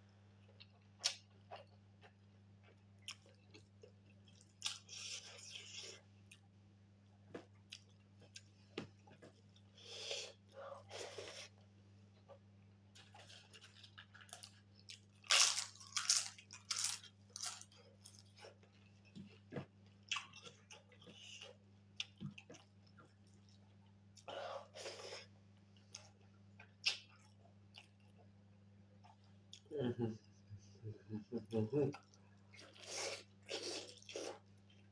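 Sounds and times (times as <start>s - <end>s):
chewing and crunching: 12.9s - 29.7s.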